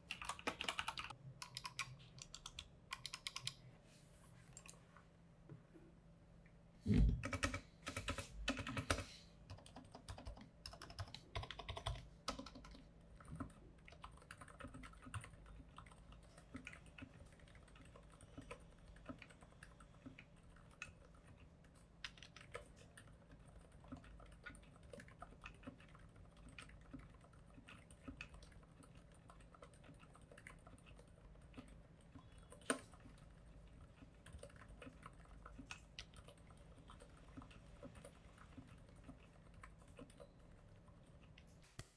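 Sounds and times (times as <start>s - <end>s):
soft mechanical keyboard typing: 0.0s - 3.6s, 4.5s - 4.8s, 7.0s - 41.9s.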